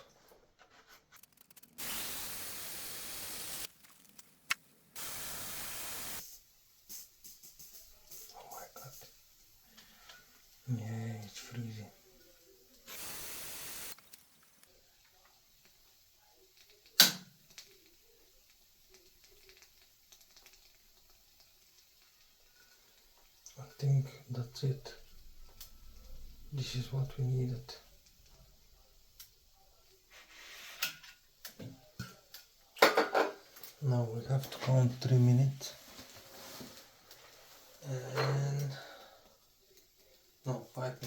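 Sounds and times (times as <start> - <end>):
aerosol spray hissing: 1.8 - 3.7, 5.0 - 9.2, 12.8 - 14.1
faint small clicks: 18.9 - 22.2.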